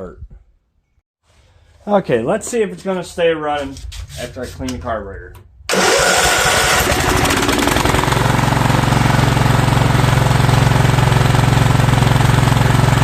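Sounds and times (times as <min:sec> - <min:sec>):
riding mower engine running: 0:05.7 - 0:13.0.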